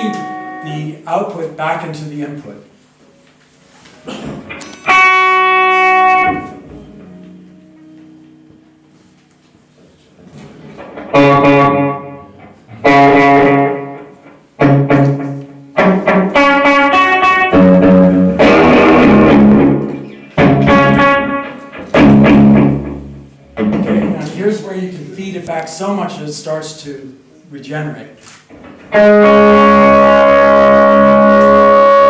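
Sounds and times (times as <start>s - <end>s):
guitar notes with echo: 0.0s - 1.1s, 4.1s - 9.2s, 10.6s - 24.4s, 28.8s - 32.0s.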